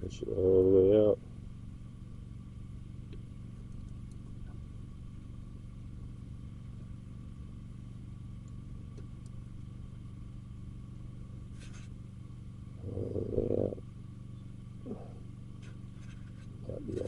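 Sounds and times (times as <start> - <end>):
low mechanical hum: 0.0 - 17.0
faint light clicks: 3.1 - 4.3, 8.4 - 9.7.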